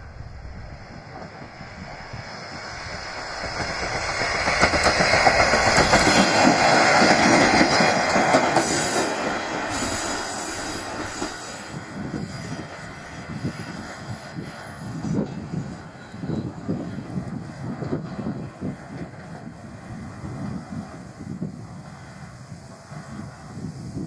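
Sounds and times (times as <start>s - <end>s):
diesel railcar passing: 0.0s - 24.0s
wheels running over rails: 2.5s - 11.6s.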